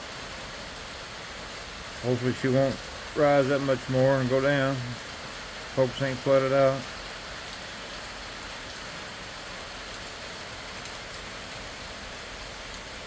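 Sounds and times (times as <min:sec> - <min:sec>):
rain hissing: 0:00.0 - 0:13.0.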